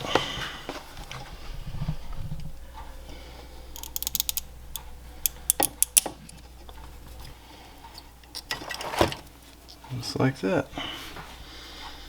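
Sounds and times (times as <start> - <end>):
plastic parts snapping: 3.8 - 6.4.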